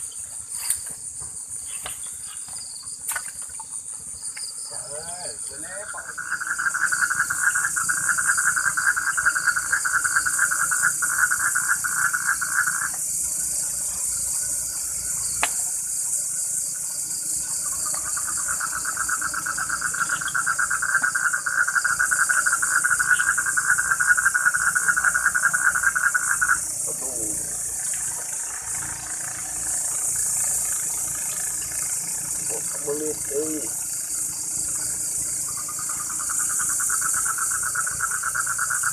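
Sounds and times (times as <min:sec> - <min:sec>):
high insect trill: 0:00.0 - 0:38.9
low rapidly pulsing trill: 0:04.8 - 0:38.9.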